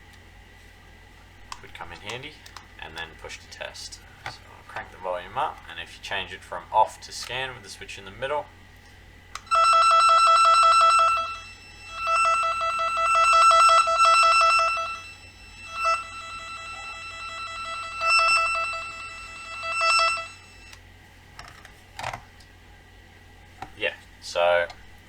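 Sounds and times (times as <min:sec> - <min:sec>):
high fast-pulsing electronic tone: 0:09.5 - 0:20.7.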